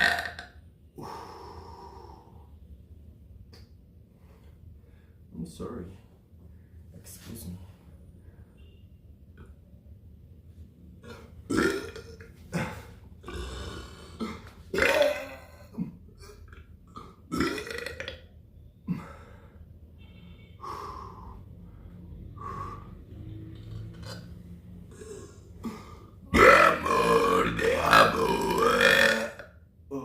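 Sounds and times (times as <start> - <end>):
person burping: 0.0 - 0.6, 11.0 - 18.3, 23.9 - 30.0.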